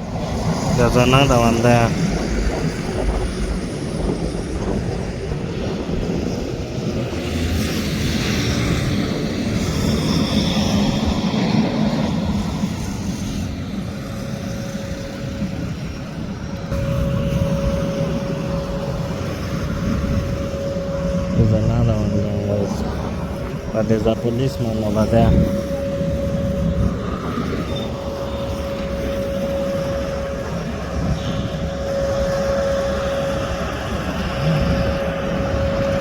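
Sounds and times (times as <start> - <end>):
rushing noise: 9.5 - 36.0
faint steady tone: 16.5 - 36.0
vehicle engine running: 16.7 - 36.0.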